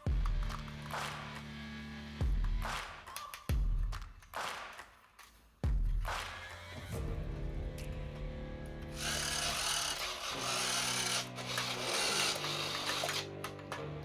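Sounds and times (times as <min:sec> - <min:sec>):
scratchy rasping noise: 0:09.0 - 0:13.2.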